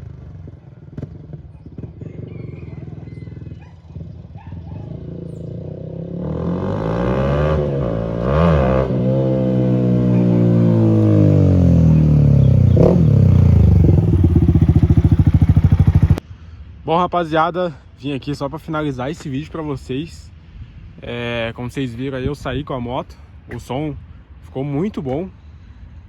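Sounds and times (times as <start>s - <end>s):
motorcycle engine revving: 0.0s - 16.2s.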